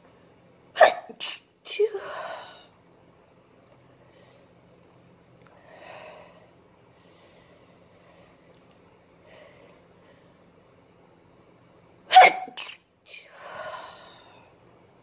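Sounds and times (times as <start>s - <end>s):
person breathing faintly: 5.5s - 8.5s, 9.2s - 10.5s, 13.3s - 14.6s.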